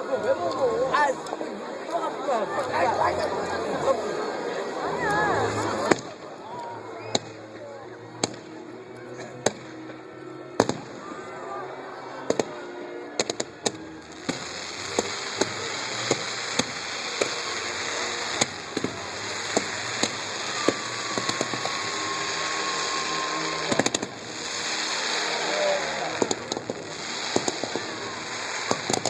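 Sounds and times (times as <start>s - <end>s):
firework crackling: 0.0s - 9.9s, 10.5s - 29.0s
fireworks bangs: 8.2s - 8.5s, 10.6s - 11.0s, 12.2s - 12.6s, 13.2s - 29.0s
falling firework whistle: 10.6s - 11.3s, 13.2s - 29.0s
steady hiss: 12.3s - 29.0s.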